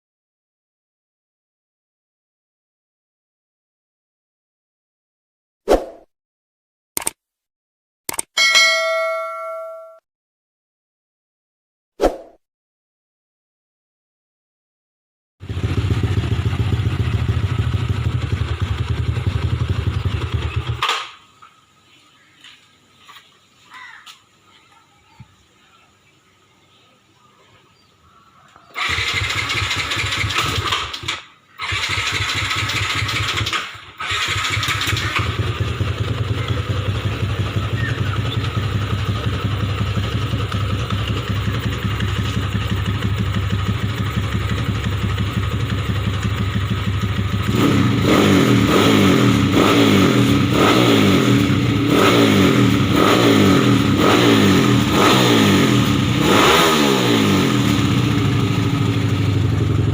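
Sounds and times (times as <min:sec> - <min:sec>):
motorcycle engine revving: 0:15.4 - 0:21.1, 0:28.7 - 0:59.9
motorcycle engine starting and idling: 0:15.4 - 0:21.6, 0:28.6 - 0:59.9.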